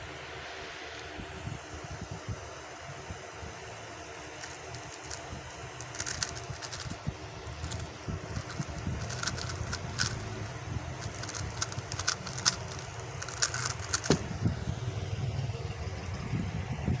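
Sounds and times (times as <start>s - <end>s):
steady low hum: 0.0s - 17.0s
speedcube layers clicking: 4.4s - 14.2s.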